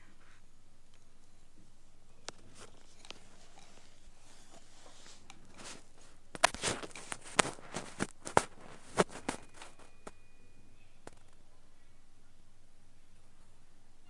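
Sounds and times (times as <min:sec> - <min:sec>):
faint high steady tone: 0:00.0 - 0:14.0
sharp clicks and crackles: 0:05.2 - 0:10.2, 0:11.0 - 0:11.4.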